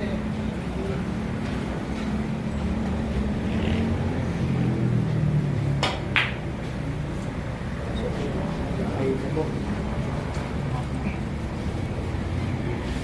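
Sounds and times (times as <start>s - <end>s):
pool balls clicking: 5.8s - 6.4s.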